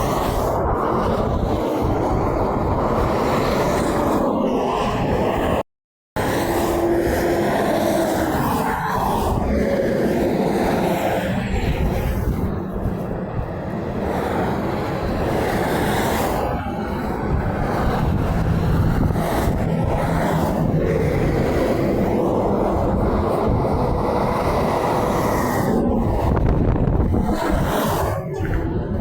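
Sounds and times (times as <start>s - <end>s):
highway truck traffic rumble: 12.4s - 29.0s.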